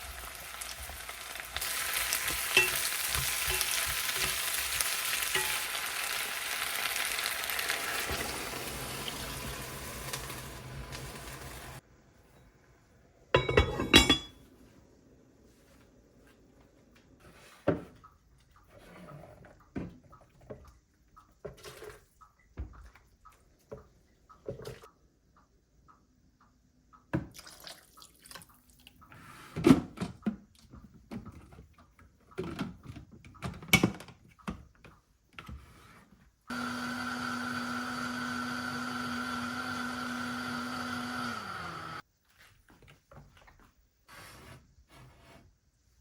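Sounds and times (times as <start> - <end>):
kitchen appliance motor: 7.4 - 11.8, 36.5 - 42.0
utensils knocking and clattering: 13.4 - 14.4.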